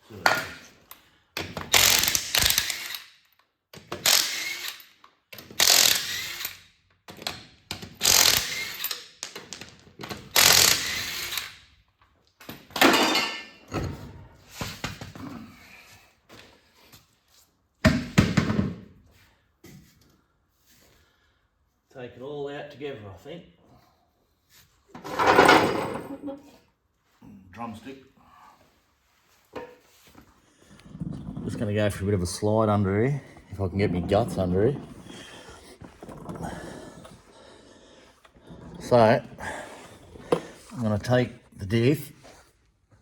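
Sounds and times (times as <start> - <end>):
tools clattering on metal: 12.7 - 13.8, 25.0 - 26.2.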